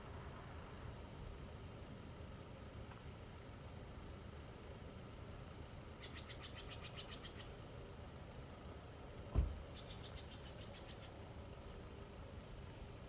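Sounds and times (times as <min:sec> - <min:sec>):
bird trilling: 0:06.0 - 0:07.5
thump against microphone: 0:09.3 - 0:09.6.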